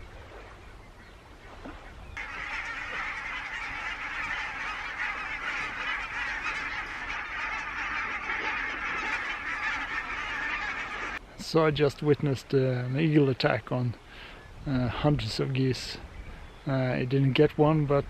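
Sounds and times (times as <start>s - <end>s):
flock of geese honking: 2.2s - 11.2s.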